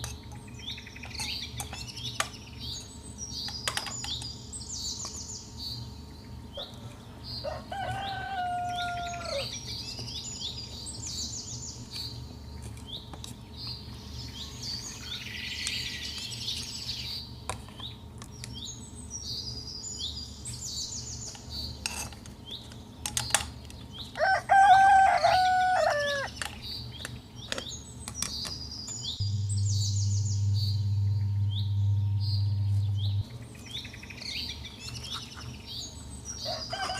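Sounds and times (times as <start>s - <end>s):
small songbirds chirping: 0.0s - 36.9s
rooster crowing: 7.4s - 9.6s, 24.2s - 26.4s, 36.4s - 36.9s.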